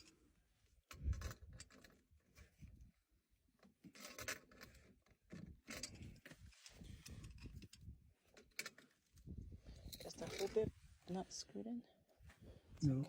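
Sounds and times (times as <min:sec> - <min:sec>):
faint rubbing and scraping: 0:05.8 - 0:13.0.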